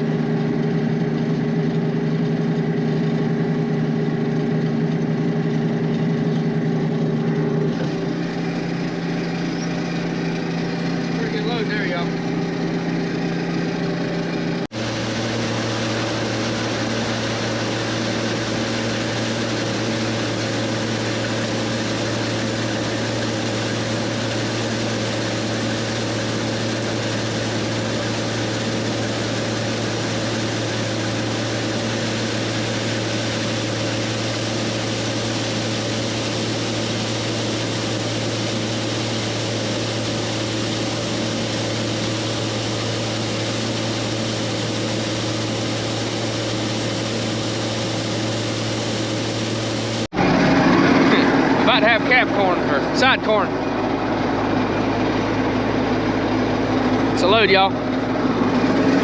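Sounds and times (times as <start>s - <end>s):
combine harvester engine drone: 0.0s - 59.0s
machinery hum: 0.0s - 59.0s.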